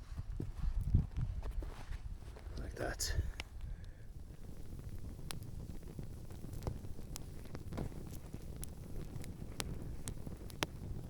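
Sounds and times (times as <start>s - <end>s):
wind rumble on microphone: 0.0s - 11.0s
faint sharp clicks: 3.3s - 11.0s.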